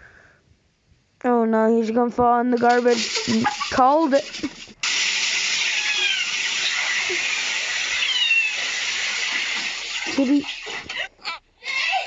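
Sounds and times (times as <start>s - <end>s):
steady hiss: 2.6s - 10.9s
cat meowing: 5.6s - 6.8s, 8.0s - 8.8s.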